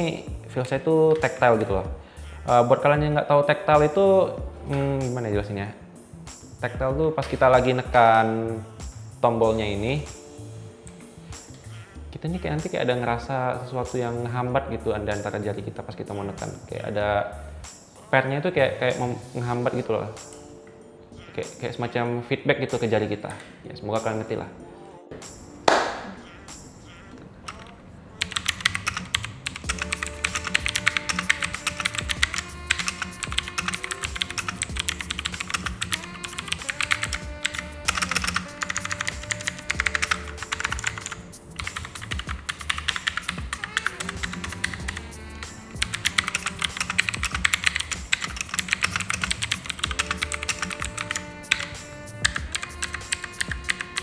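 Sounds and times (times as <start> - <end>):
background music: 0.0 - 54.0
rapid clicky keyboard typing: 27.4 - 54.0.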